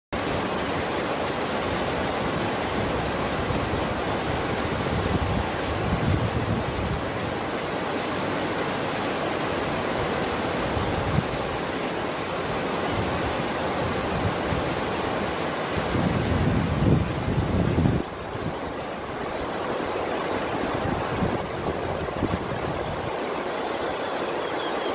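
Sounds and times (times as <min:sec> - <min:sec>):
rushing water: 0:00.1 - 0:24.9.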